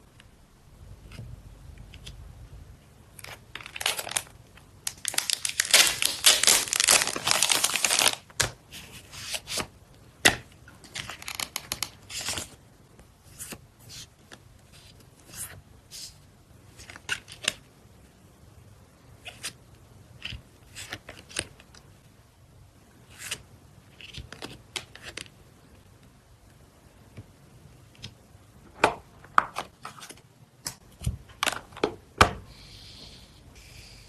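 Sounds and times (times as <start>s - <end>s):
plastic and card crinkling: 3.1s - 9.7s, 10.8s - 12.6s.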